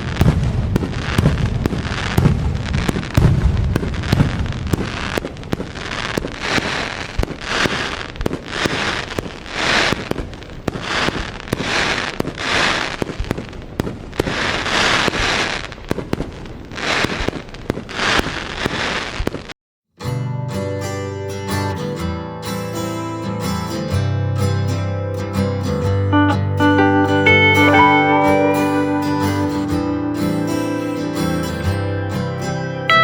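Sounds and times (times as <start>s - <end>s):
fireworks hissing: 0.0s - 19.4s
deep fireworks booms: 0.0s - 19.5s
fireworks popping and crackling: 0.0s - 19.6s.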